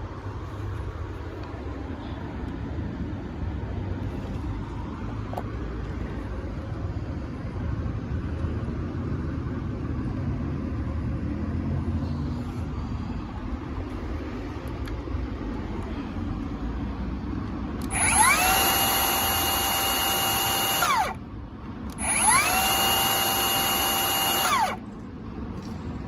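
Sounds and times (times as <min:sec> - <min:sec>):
miter saw blade whining: 0:17.8 - 0:21.2, 0:21.9 - 0:24.8.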